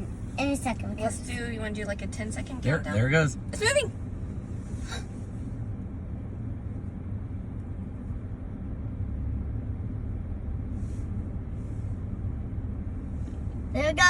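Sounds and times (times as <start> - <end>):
car interior rumble: 0.0 - 14.0.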